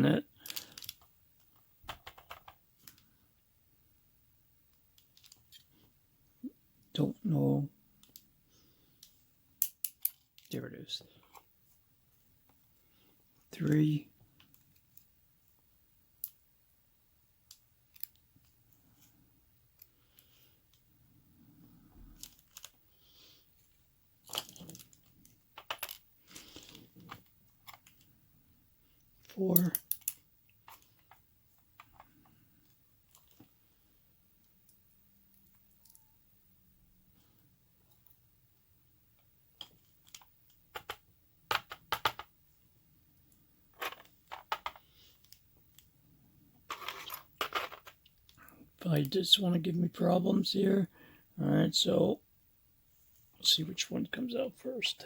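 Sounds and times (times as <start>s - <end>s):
small metallic clicks and clinks: 29.6s - 31.2s.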